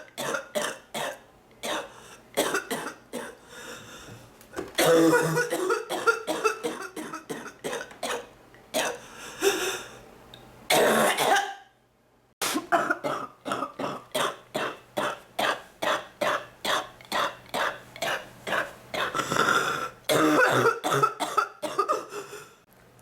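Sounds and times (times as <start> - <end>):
woman coughing wetly: 0.0 - 3.4, 4.8 - 9.0, 10.7 - 11.7, 12.4 - 19.2, 20.1 - 22.4.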